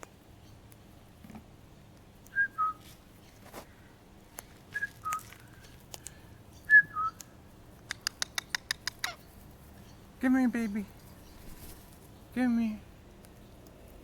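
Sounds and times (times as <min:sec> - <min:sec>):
faint clicks: 0:07.2 - 0:09.1.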